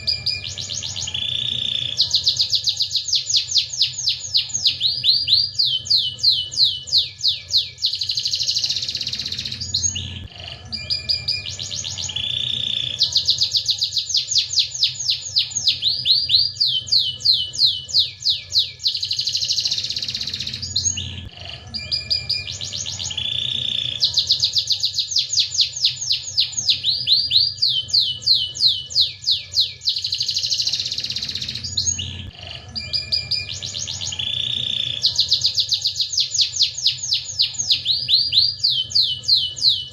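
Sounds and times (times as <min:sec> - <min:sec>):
steady low hum: 0:00.0 - 0:02.6
canary singing trills: 0:00.0 - 0:39.9.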